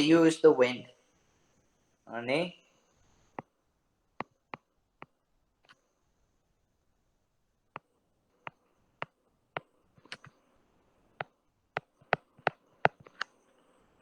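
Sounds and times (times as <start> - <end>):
computer mouse clicking: 8.5 - 10.4, 11.2 - 13.4.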